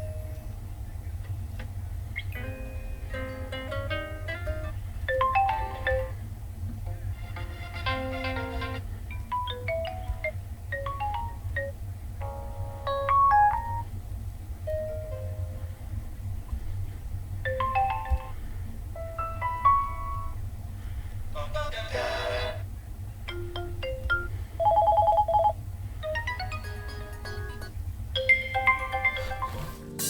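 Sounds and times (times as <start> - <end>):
steady low hum: 0.0 - 30.0
electronic ringtone melody: 5.1 - 6.2, 7.8 - 13.9, 17.5 - 18.4, 23.3 - 30.0.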